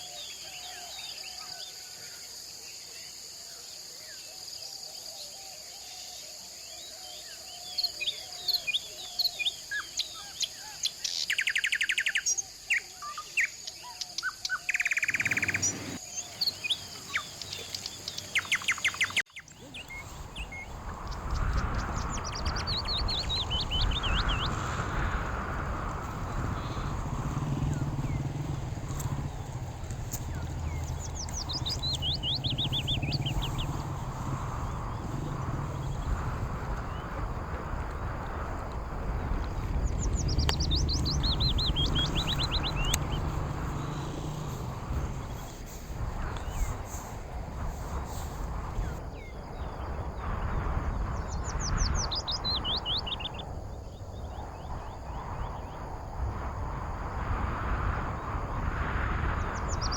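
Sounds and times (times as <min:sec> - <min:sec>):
songbird singing: 0:00.0 - 0:59.9
steady low rumble: 0:19.7 - 0:52.9
steady rushing background: 0:19.8 - 0:49.0.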